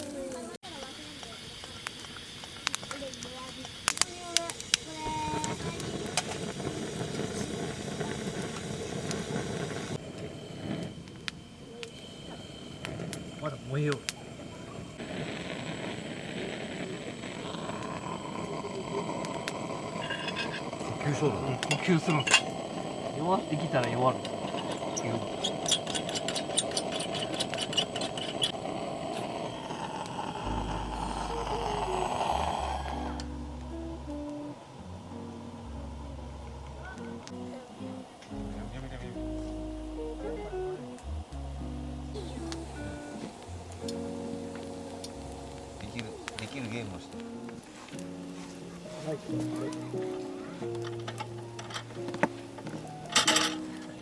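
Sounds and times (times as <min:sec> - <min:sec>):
campfire burning: 0:00.0 - 0:54.0
fire crackling pops: 0:00.0 - 0:54.0
background music with bass: 0:30.4 - 0:53.2.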